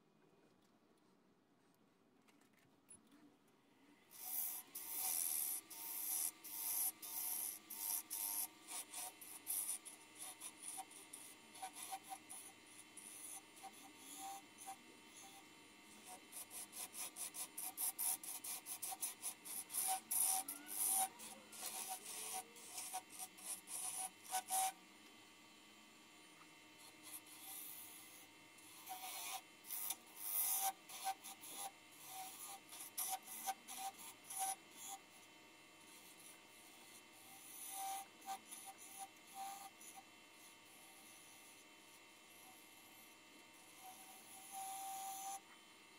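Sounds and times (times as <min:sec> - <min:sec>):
lathe humming: 0:04.0 - 0:45.9
gouge scraping wood on a lathe: 0:04.1 - 0:24.8, 0:26.7 - 0:45.5.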